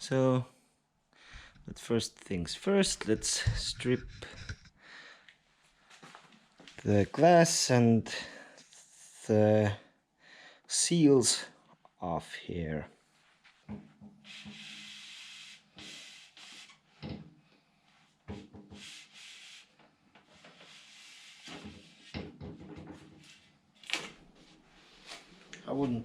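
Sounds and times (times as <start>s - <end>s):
rubber seals rubbing and scraping: 3.0s - 4.7s.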